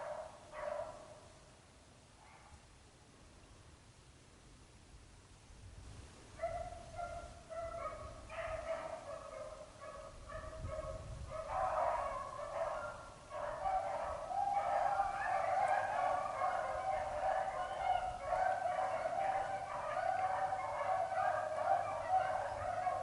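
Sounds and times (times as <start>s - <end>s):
dogs baying: 6.4s - 23.0s.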